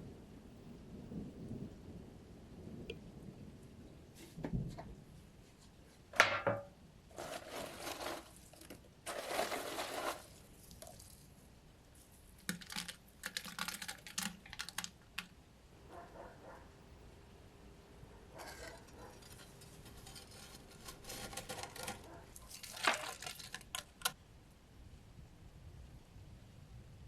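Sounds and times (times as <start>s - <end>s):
scraping sounds: 7.1s - 11.3s, 18.4s - 24.2s.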